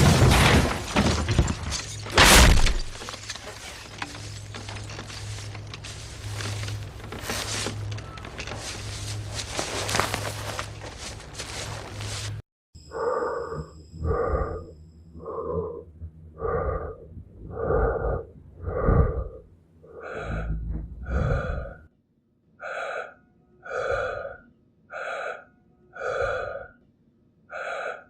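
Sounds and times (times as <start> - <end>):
low rumble: 13.6 - 21.9
person breathing heavily: 16.4 - 21.9, 22.6 - 26.8, 27.5 - 28.0.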